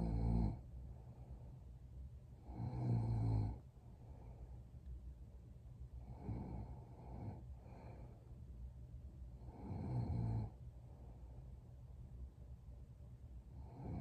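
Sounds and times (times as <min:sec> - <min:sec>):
woman snoring: 0:00.0 - 0:00.6, 0:02.4 - 0:03.6, 0:06.1 - 0:07.4, 0:09.5 - 0:10.5, 0:13.6 - 0:14.0
woman breathing softly: 0:00.0 - 0:02.7, 0:03.5 - 0:04.9, 0:06.0 - 0:08.5, 0:10.4 - 0:11.9.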